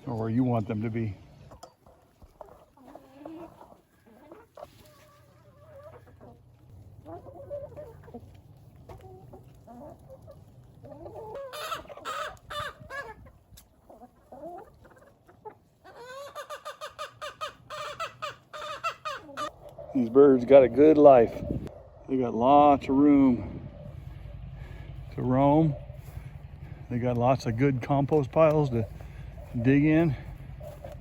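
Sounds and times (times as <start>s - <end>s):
chickens clucking: 0.0s - 31.0s.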